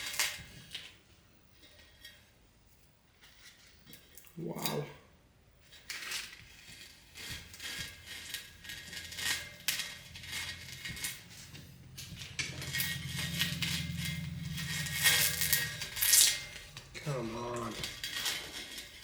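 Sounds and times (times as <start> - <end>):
low steady hum: 3.9 - 19.0
metal tools clinking: 5.9 - 19.0.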